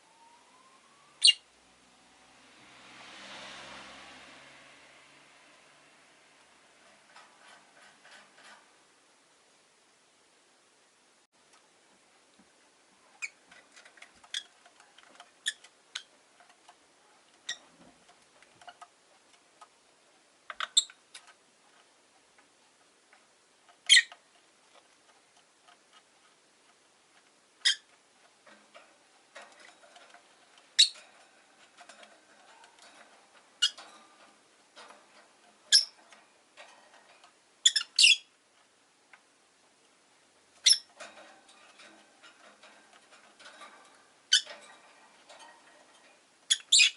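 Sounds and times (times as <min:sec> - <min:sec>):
lovebirds chirping: 0:01.2 - 0:01.5, 0:23.8 - 0:24.2, 0:30.7 - 0:31.1, 0:35.7 - 0:36.0, 0:37.6 - 0:38.3, 0:40.6 - 0:40.9, 0:46.5 - 0:46.9
faint ticking and rustling: 0:02.4 - 0:10.3, 0:11.2 - 0:46.9.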